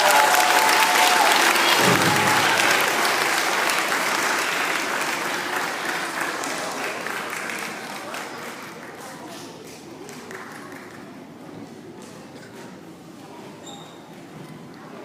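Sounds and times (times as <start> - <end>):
audience applause and cheering: 0.0 - 8.4.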